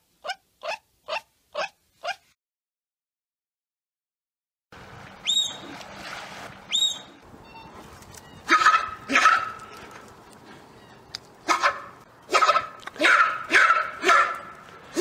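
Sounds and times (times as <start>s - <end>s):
dog barking: 8.5s - 9.6s, 11.4s - 14.5s.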